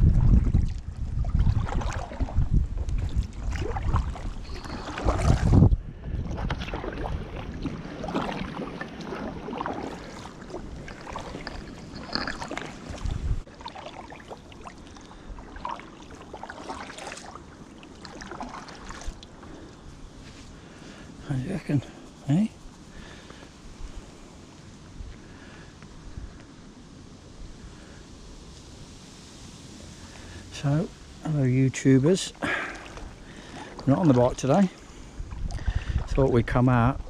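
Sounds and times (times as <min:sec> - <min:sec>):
wind rumbling on microphone: 0:00.0 - 0:37.0
kayak paddle splashing in water: 0:00.1 - 0:19.9, 0:32.3 - 0:37.0.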